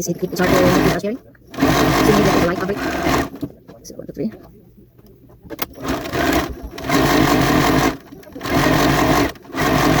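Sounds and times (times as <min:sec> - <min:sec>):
sewing machine stitching: 0:00.2 - 0:03.5, 0:05.6 - 0:10.0.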